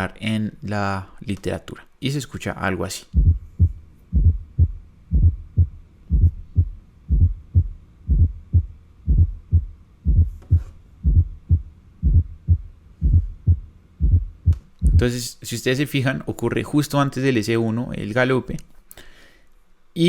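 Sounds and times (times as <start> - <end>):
heartbeat gallop with low thuds: 3.2 - 15.1.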